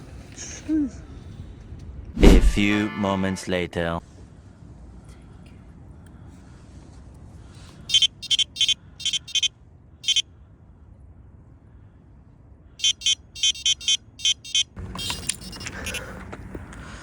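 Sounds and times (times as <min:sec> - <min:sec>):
bite alarm short high beeps: 0:07.9 - 0:10.2, 0:12.8 - 0:16.0.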